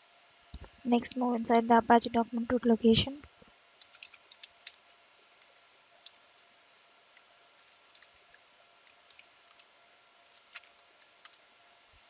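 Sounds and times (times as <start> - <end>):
steady low hiss: 0.0 - 12.0
computer keyboard typing: 3.8 - 9.7, 10.3 - 11.4.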